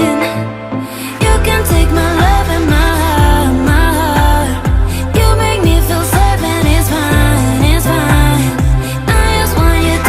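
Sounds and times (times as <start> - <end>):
pop music with steady beat: 0.0 - 10.0.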